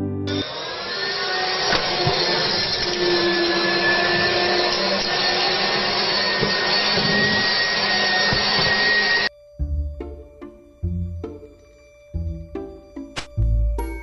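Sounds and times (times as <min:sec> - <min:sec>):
electric motor running with whine: 0:00.3 - 0:09.3.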